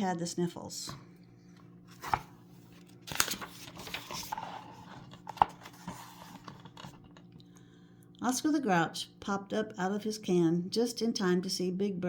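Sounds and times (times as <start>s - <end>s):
paper pages rustling: 1.8s - 7.2s.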